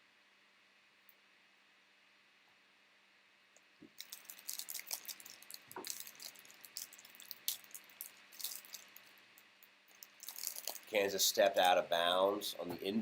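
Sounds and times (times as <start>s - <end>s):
card pack wrapper crinkling: 4.0s - 9.2s, 9.9s - 11.0s.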